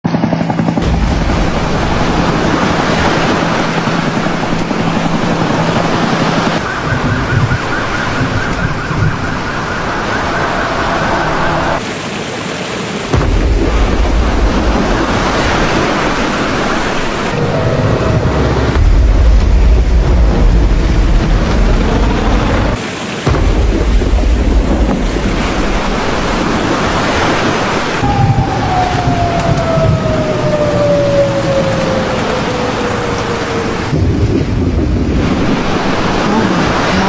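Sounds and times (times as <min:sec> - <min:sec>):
heavy rain: 0:00.7 - 0:37.0
rushing floodwater: 0:00.7 - 0:37.0
steady high tone: 0:17.0 - 0:22.8.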